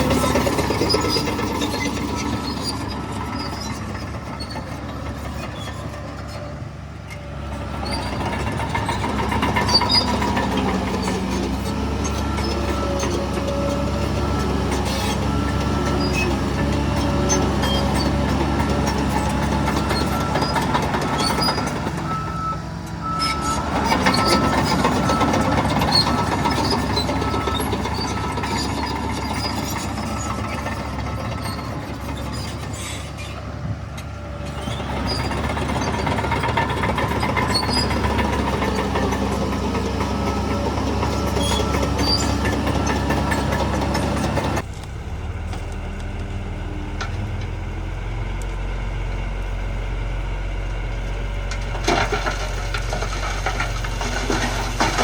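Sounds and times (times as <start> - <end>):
diesel machinery running under load: 0.0 - 55.0
reversing alarm beeping: 19.7 - 31.4, 36.7 - 44.6.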